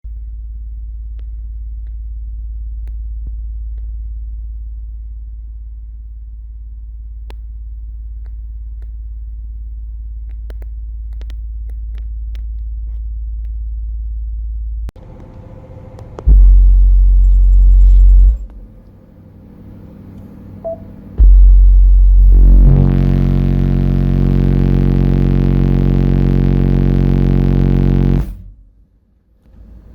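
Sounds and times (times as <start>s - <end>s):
steady deep rumble: 0.0s - 29.9s
subwoofer deep bass burps: 16.2s - 18.8s, 20.7s - 28.6s.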